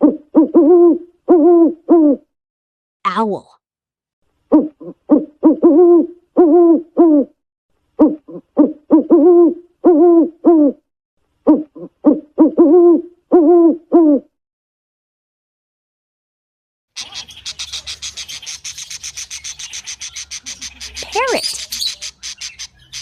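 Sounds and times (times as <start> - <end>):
owl hooting: 0.0 - 2.2, 4.5 - 7.3, 8.0 - 10.8, 11.5 - 14.3.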